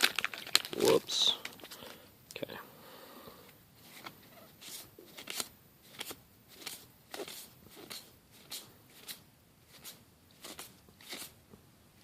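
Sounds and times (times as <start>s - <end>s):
cards being flipped: 3.9s - 11.4s.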